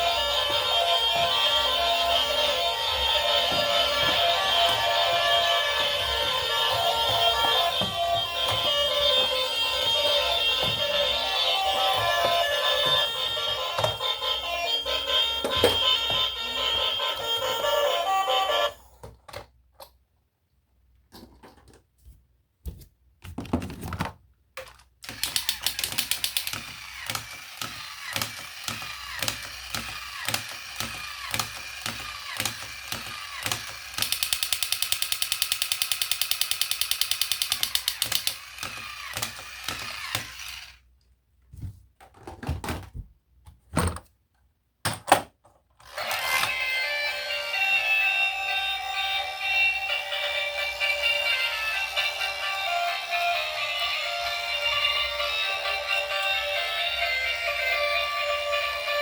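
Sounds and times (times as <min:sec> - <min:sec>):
toy mechanism ticking and whirring: 0:00.0 - 0:19.0, 0:24.6 - 0:40.9, 0:45.8 - 0:59.0
plastic toy vehicles clicking: 0:24.5 - 0:40.8, 0:45.4 - 0:46.8.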